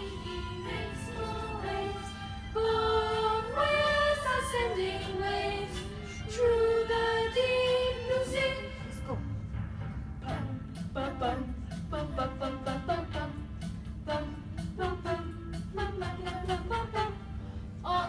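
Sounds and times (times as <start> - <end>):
voices singing slow melody: 0.0 - 8.9.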